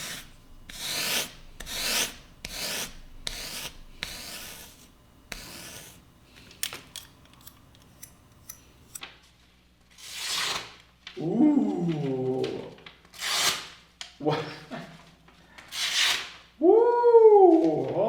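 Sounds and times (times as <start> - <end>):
knife scraping on whetstone: 0.0 - 6.0.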